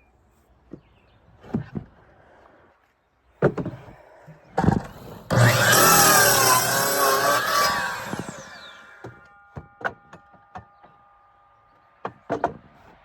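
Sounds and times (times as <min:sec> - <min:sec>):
knocks of wood being handled: 0:00.7 - 0:02.0, 0:03.4 - 0:04.0, 0:12.0 - 0:13.0
power saw cutting wood: 0:04.6 - 0:09.2.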